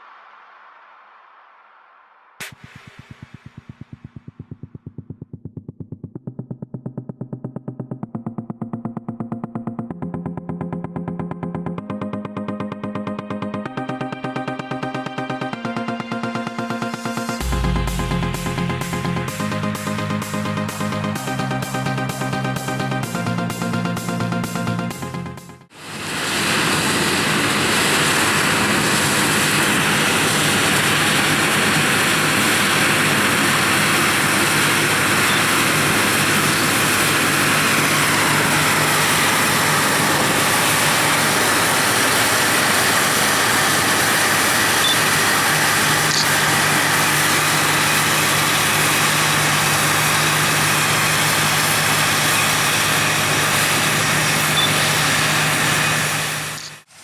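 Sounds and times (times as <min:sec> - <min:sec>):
loud mechanical whirr: 0:26.5 - 0:56.9.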